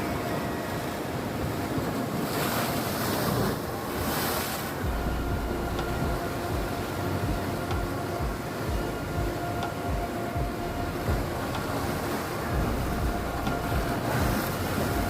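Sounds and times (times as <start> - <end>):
sea waves breaking on rocks: 0.0 - 15.0
wind buffeting microphone: 0.0 - 15.0.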